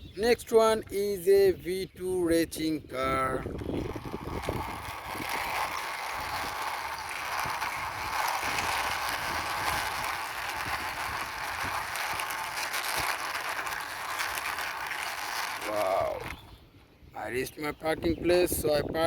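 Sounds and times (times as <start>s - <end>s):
toy car wheels rolling and rattling: 2.5s - 16.5s.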